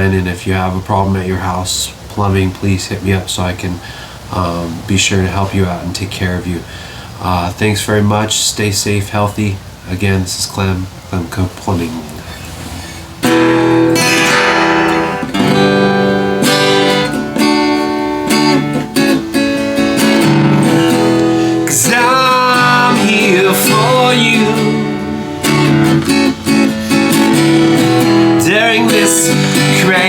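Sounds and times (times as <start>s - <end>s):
strummed acoustic guitar: 11.7s - 30.0s
person singing: 14.0s - 15.4s, 21.0s - 25.2s, 28.4s - 30.0s.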